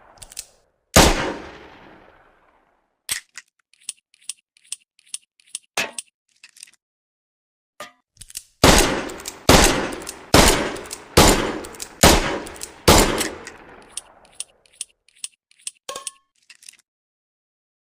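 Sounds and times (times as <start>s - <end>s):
light metallic clicks: 9.1s - 16.8s.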